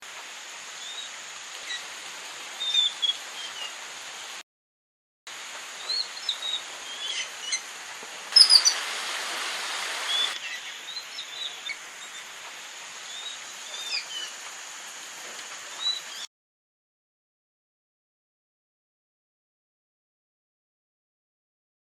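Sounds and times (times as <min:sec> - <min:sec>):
background hiss: 0:00.0 - 0:04.4, 0:05.3 - 0:16.3
small birds chirping: 0:00.6 - 0:04.4, 0:05.7 - 0:14.5, 0:15.7 - 0:16.3.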